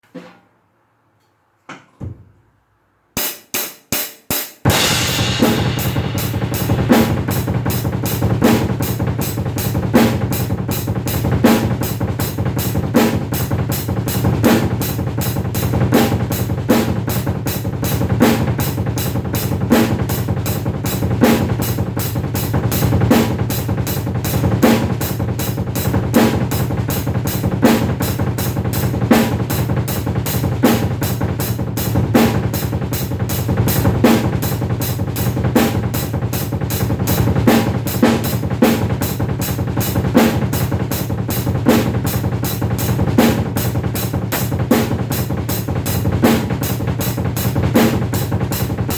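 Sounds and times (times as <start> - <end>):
drum kit playing: 3.2 - 48.9.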